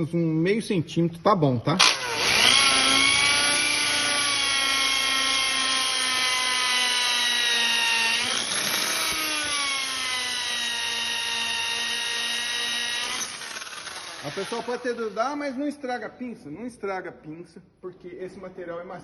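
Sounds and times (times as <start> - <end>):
electric drill whining: 1.8 - 15.3.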